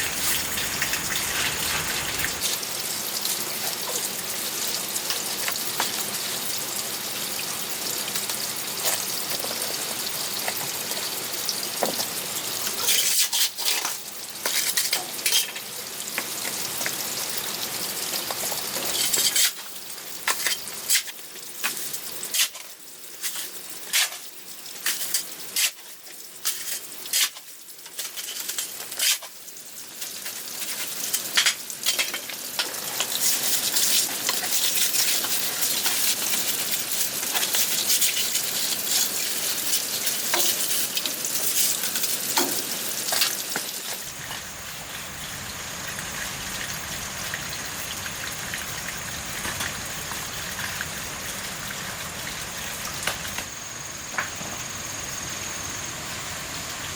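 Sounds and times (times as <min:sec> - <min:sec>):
flowing water: 0:00.0 - 0:03.4, 0:42.2 - 0:53.5
food sizzling in a pan: 0:00.0 - 0:56.9
stirring clicks and scrapes: 0:18.2 - 0:29.4, 0:30.0 - 0:44.4.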